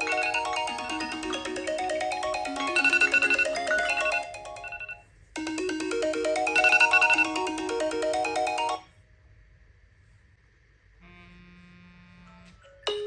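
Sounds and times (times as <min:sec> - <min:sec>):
smartphone alarm chime melody: 0:00.0 - 0:08.8.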